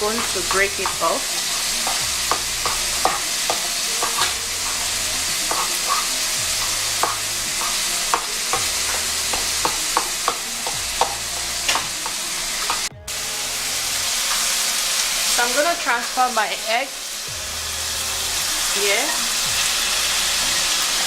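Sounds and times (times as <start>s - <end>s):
spoon tapping and scraping pan: 0.0s - 12.9s
egg sizzling in hot oil: 0.0s - 21.0s.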